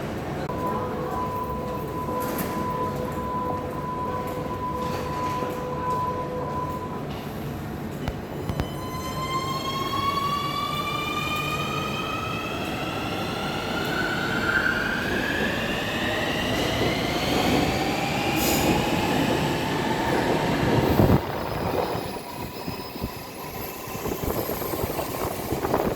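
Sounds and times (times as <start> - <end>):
metro train whine rising: 0.1 - 25.9.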